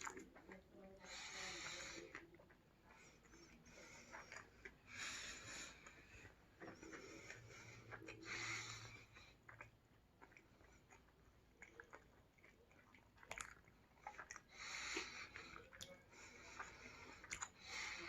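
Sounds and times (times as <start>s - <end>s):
person chewing: 0.0s - 18.0s
breath noise: 1.0s - 2.2s, 2.8s - 9.4s, 14.0s - 18.0s.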